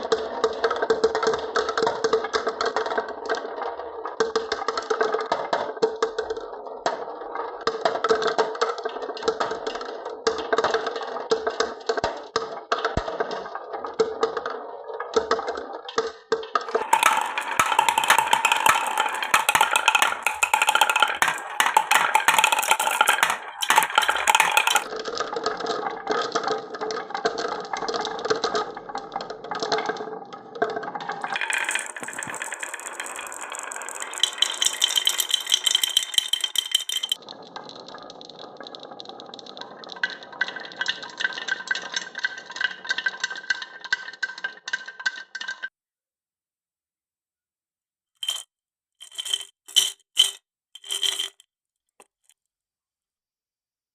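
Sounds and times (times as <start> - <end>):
marbles rattling down wooden run: 16.5 - 29.1, 29.7 - 45.6, 48.2 - 48.4, 49.0 - 51.4.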